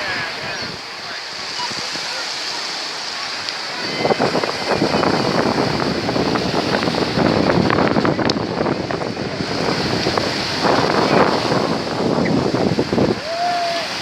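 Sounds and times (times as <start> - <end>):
sea surf washing ashore: 0.0 - 14.0
wind buffeting microphone: 0.0 - 14.0.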